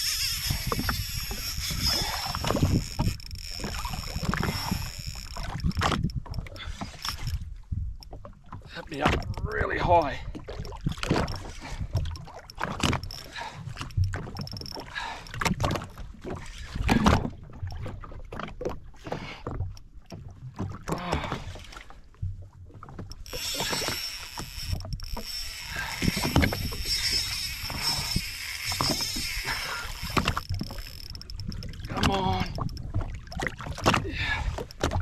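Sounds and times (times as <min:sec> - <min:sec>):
fishing reel whining: 0:00.0 - 0:07.5, 0:12.1 - 0:16.0, 0:23.0 - 0:32.9
water slapping against hull: 0:00.0 - 0:35.0.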